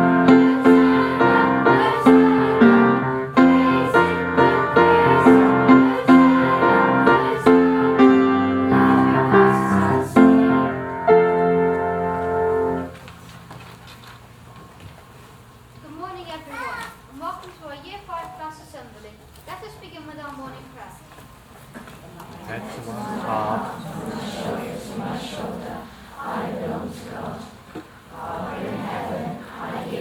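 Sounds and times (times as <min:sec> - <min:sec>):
piano music: 0:00.0 - 0:13.0.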